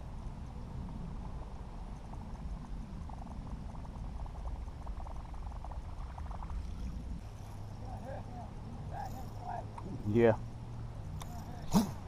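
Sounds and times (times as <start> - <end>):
wind rumble on microphone: 0.0 - 12.0.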